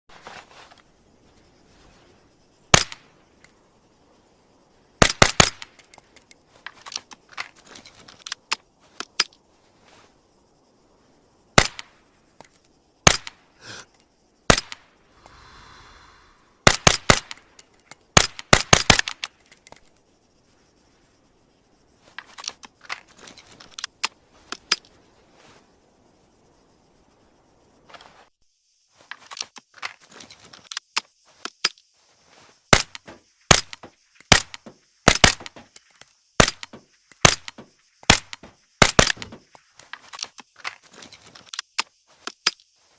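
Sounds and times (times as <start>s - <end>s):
pistol shots: 32.8s - 35.6s.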